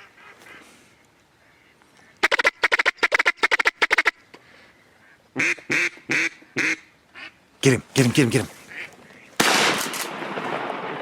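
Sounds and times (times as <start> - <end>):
duck call quacks: 2.2 - 4.1, 5.4 - 8.9.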